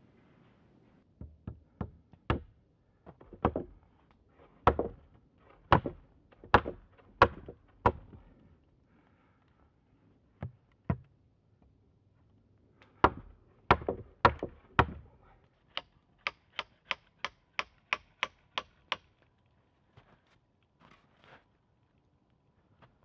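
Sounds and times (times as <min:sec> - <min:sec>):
knocks on wood: 0:01.2 - 0:02.5, 0:03.2 - 0:03.7, 0:04.7 - 0:05.0, 0:05.7 - 0:08.2.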